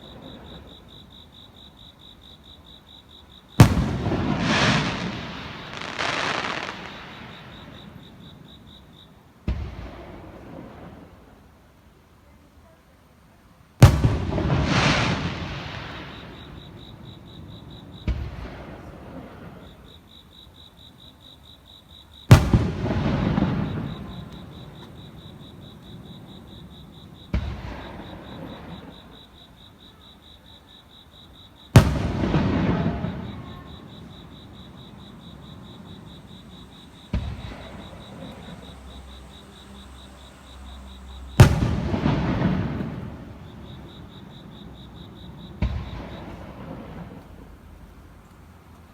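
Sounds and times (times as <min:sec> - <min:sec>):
insect chirping: 0:00.0 - 0:11.3, 0:14.1 - 0:48.8
firework shells bursting: 0:03.6 - 0:08.1, 0:31.8 - 0:39.2, 0:41.2 - 0:43.8
rumble after bangs: 0:41.4 - 0:43.8.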